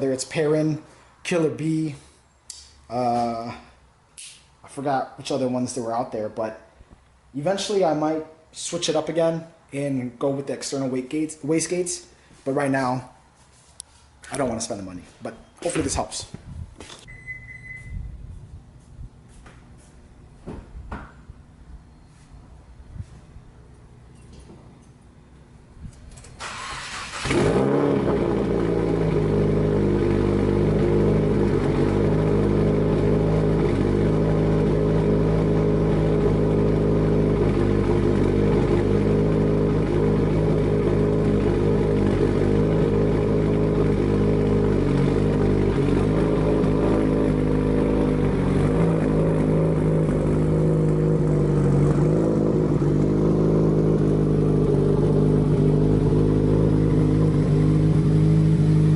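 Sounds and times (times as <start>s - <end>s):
starter motor cranking: 26.1s - 27.8s
car engine fast idle: 26.4s - 58.9s.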